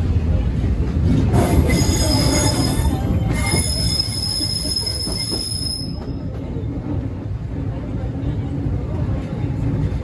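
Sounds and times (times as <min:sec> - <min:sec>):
train running rumble: 0:00.0 - 0:10.0
train wheels squealing on rails: 0:01.1 - 0:06.6.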